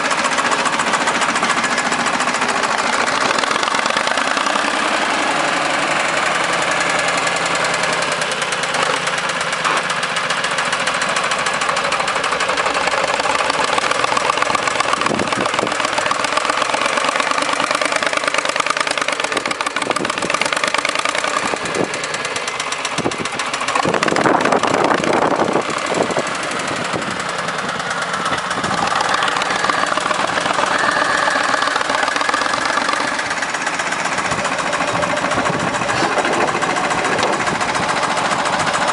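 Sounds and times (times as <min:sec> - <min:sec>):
backhoe engine running: 0:00.0 - 0:38.9
clattering: 0:28.2 - 0:38.9.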